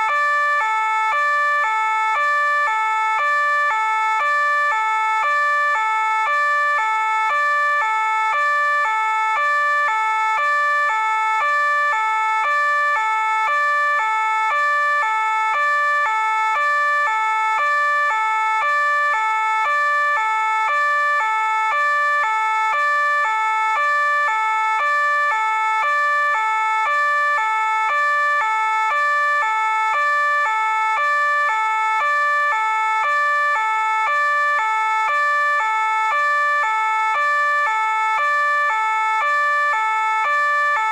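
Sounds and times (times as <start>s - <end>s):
two-tone police siren: 0.0s - 40.9s.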